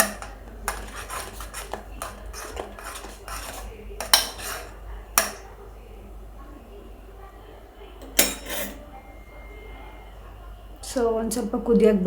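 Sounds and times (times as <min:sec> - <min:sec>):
spoon scraping and clinking in pot: 0:00.0 - 0:05.4, 0:08.0 - 0:08.9.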